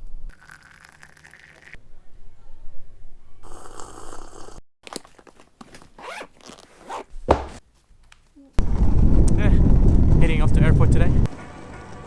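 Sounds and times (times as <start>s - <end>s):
bag zipper being pulled: 5.8s - 7.1s.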